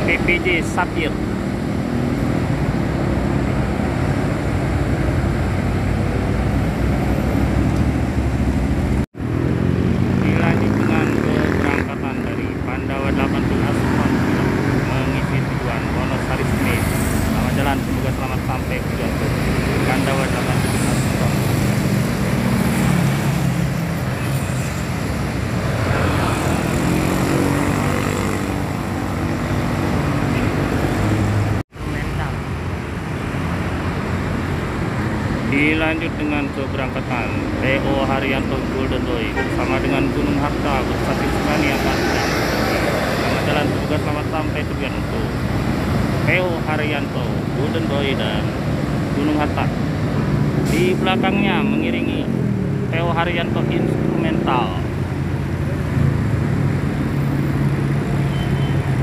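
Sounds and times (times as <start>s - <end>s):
road noise: 0.0s - 59.0s
diesel bus engine pulling away: 50.5s - 51.3s.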